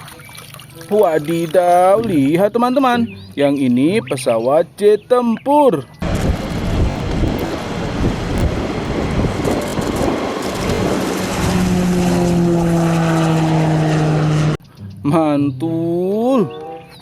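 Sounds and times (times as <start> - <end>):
falling jet drone: 6.0 - 14.6
jet engine rumble: 6.0 - 14.6.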